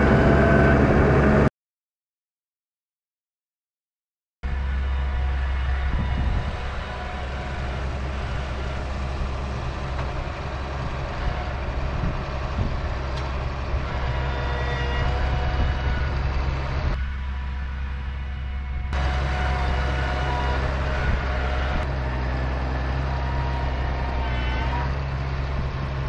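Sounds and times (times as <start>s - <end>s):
tractor engine droning: 0.0s - 1.5s, 4.4s - 26.0s.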